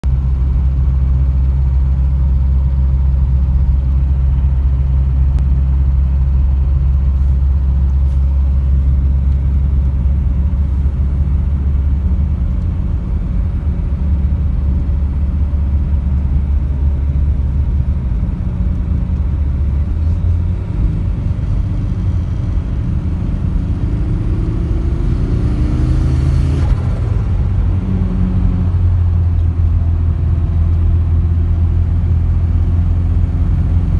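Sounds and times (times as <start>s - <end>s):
car engine revving: 18.8s - 30.4s.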